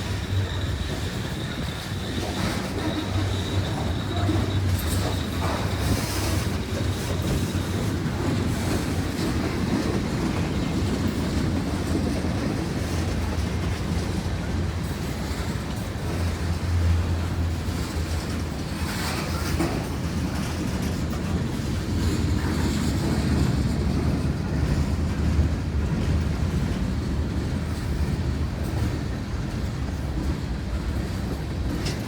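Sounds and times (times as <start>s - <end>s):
high wheel squeal: 0.0s - 9.6s
freight train wheels rumbling: 0.0s - 32.0s.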